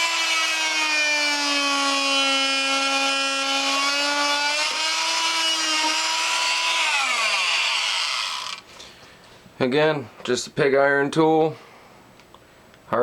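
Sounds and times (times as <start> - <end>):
oscillating multi-tool buzzing: 0.0 - 8.6.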